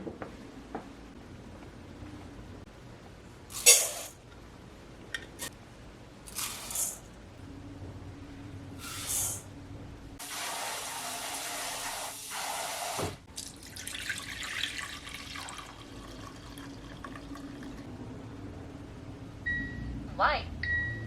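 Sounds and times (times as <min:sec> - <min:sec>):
kitchen tap running: 0:10.2 - 0:17.8.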